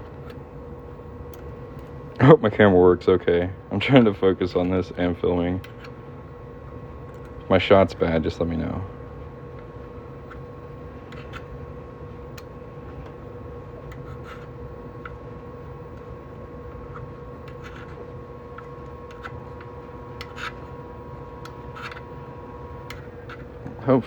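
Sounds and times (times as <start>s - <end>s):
faint steady hum: 0.0s - 24.0s.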